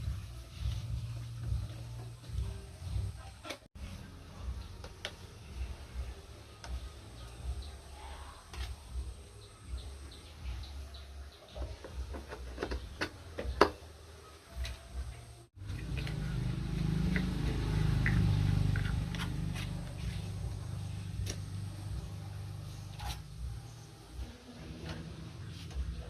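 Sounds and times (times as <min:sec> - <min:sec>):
fan motor humming: 0:11.6 - 0:26.0.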